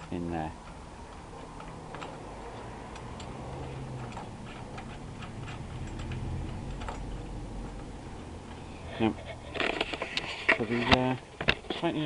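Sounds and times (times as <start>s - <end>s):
small metallic clicks: 0.0s - 8.6s.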